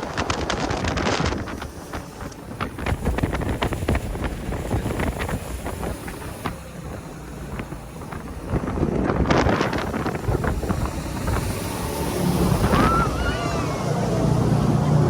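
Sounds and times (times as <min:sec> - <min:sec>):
boat engine: 0:00.0 - 0:15.0
water rushing: 0:00.0 - 0:15.0
wind buffeting microphone: 0:00.0 - 0:15.0.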